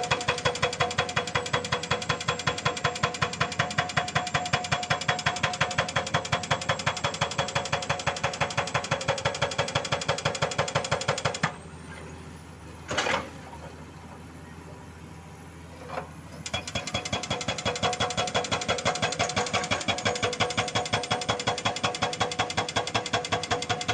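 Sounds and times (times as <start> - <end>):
hydraulic rock breaker hammering rock: 0.0 - 11.6, 16.4 - 23.9.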